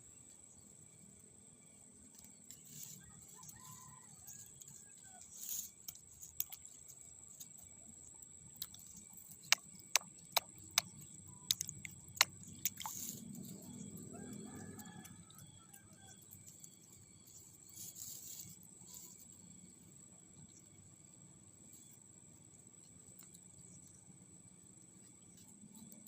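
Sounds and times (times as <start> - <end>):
sharp irregular clicks: 8.5 - 13.2
high-pitched insect drone: 8.8 - 20.7.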